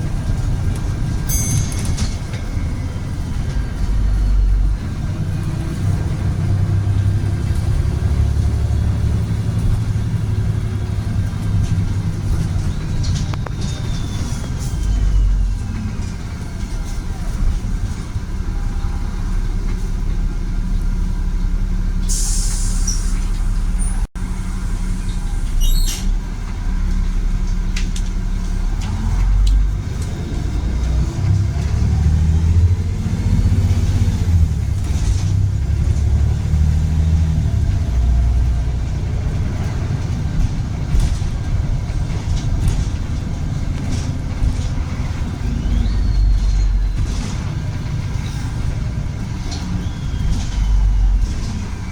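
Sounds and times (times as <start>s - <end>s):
bus diesel engine running: 0.0s - 51.9s
air release hiss: 22.1s - 23.3s.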